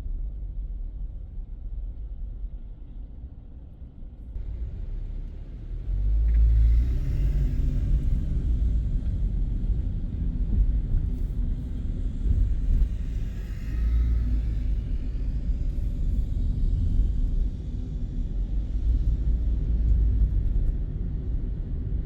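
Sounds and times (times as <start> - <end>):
car engine and road noise: 4.4 - 22.0.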